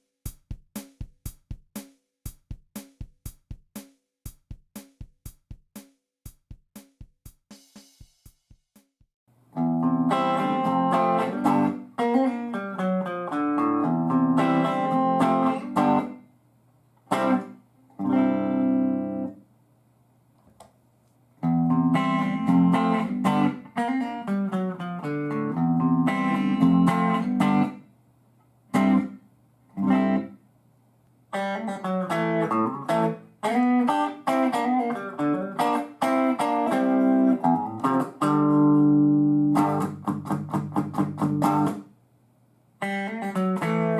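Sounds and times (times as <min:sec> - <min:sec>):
electric guitar playing: 0:09.6 - 0:16.2, 0:17.1 - 0:19.4, 0:21.4 - 0:27.8, 0:28.7 - 0:29.1, 0:29.8 - 0:30.4, 0:31.3 - 0:41.8, 0:42.8 - 0:43.9.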